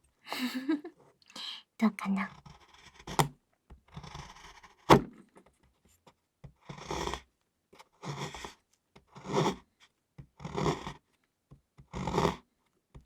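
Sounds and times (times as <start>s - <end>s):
knife shaving chocolate: 2.3s - 5.0s, 7.9s - 9.7s, 10.4s - 11.0s, 11.8s - 12.4s
sharp knock: 4.9s - 5.2s.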